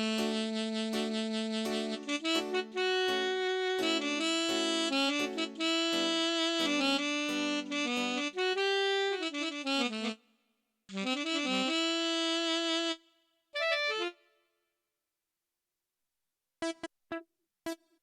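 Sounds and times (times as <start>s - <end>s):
reedy keyboard lead melody: 0.0s - 10.2s.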